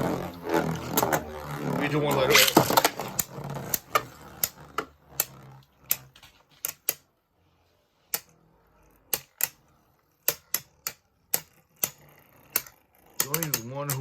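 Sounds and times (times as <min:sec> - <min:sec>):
spinning tops clacking: 0:00.0 - 0:07.0
whir of spinning tops: 0:00.0 - 0:07.0, 0:08.0 - 0:14.0.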